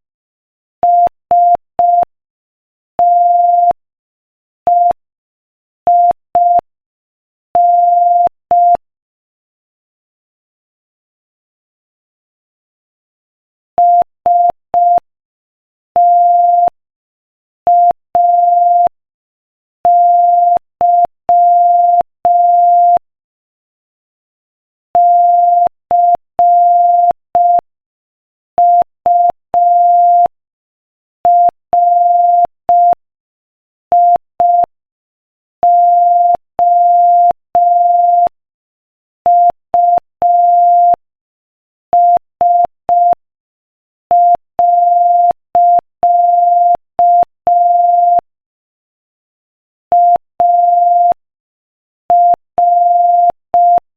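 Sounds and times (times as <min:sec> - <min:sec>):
morse code beeping: 0:44.2 - 0:48.2, 0:49.9 - 0:51.2, 0:52.1 - 0:53.9.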